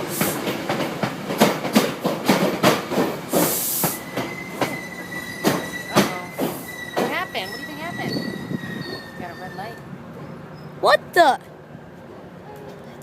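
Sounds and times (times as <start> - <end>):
train wheels clacking over rail joints: 0.0 - 8.2
thin wheel squeal: 6.7 - 9.8.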